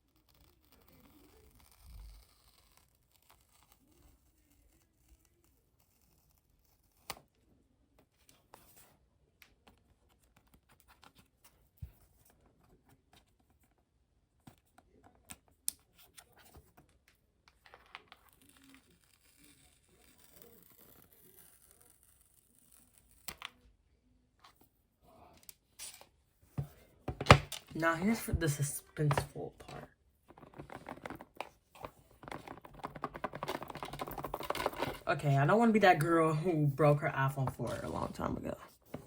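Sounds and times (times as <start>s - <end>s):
cardboard packaging rustling and tearing: 18.1s - 23.6s, 28.8s - 35.2s.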